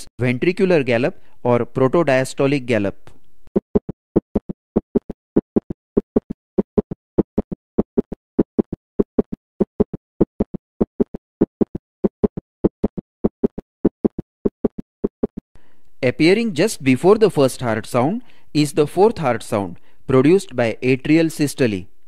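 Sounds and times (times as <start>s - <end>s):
heartbeat gallop rhythm: 3.6s - 15.4s.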